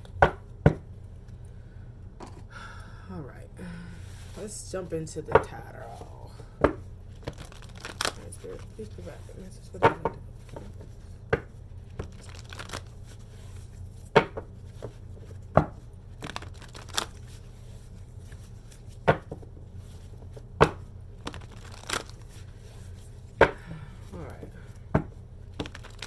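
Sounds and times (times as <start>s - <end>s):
cards being shuffled: 5.4s - 26.0s.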